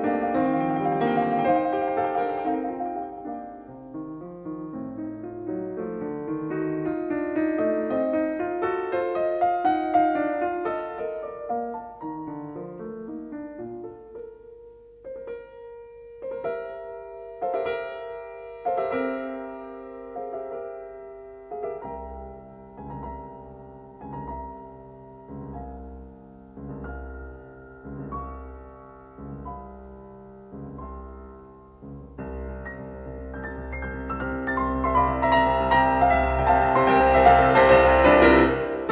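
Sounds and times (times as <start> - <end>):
piano notes ringing: 0.0 - 38.9
low bass line: 25.1 - 35.2.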